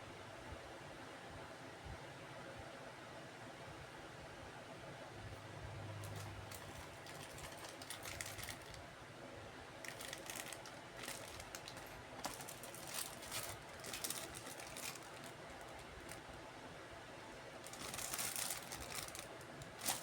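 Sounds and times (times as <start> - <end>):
plastic packaging crinkling: 6.0 - 8.8, 9.8 - 16.4, 17.5 - 20.0.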